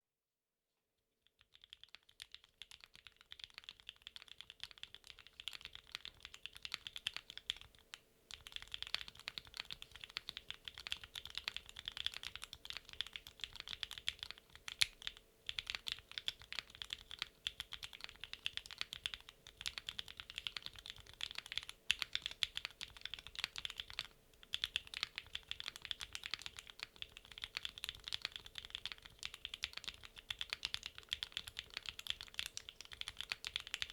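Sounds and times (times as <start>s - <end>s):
fast typing on mechanical keyboard: 1.5s - 33.9s.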